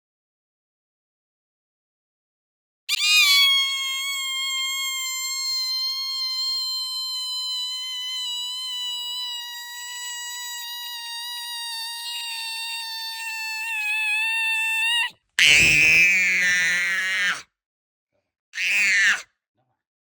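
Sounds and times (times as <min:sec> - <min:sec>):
boy screaming: 0:02.9 - 0:17.4, 0:18.6 - 0:19.2.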